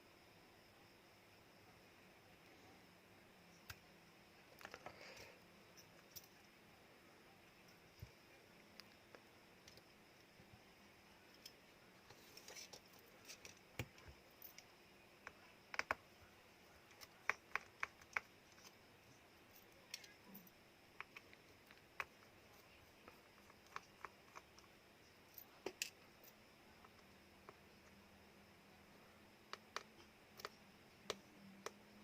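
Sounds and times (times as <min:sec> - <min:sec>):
small hand tools clicking on plastic: 0:12.4 - 0:16.1, 0:16.9 - 0:18.8, 0:19.9 - 0:22.3, 0:23.0 - 0:24.7, 0:29.5 - 0:31.9.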